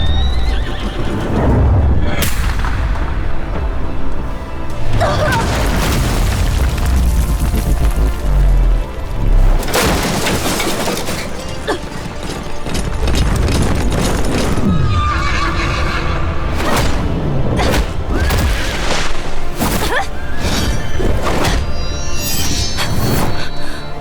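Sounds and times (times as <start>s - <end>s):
horses whinnying: 0.0s - 1.4s, 14.4s - 16.6s
dramatic orchestral music: 0.0s - 24.0s.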